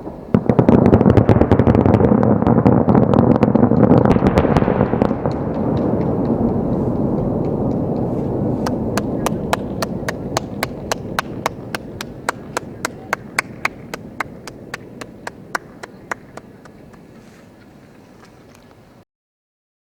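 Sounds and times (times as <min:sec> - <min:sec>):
fireworks barrage rumble: 0:00.0 - 0:19.0.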